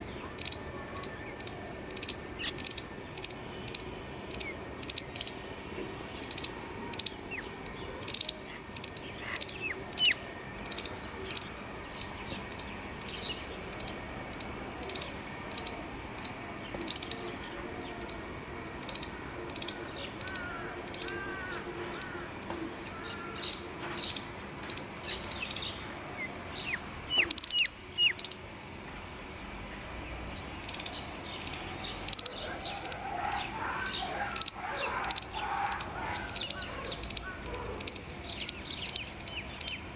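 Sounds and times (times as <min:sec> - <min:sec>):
small birds chirping: 0:00.0 - 0:39.9.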